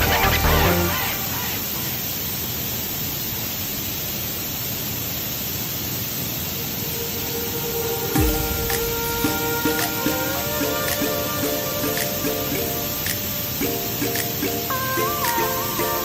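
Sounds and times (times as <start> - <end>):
music: 0.0 - 1.1, 8.1 - 16.0
steady hiss: 0.0 - 16.0.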